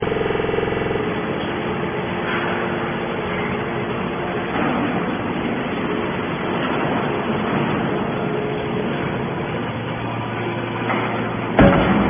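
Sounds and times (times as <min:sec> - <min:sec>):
humming tone with overtones: 0:00.0 - 0:12.0.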